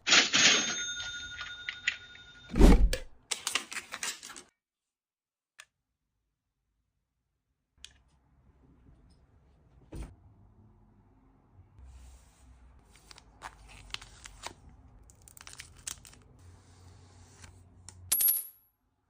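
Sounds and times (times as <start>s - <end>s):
loud thump: 2.5s - 3.1s.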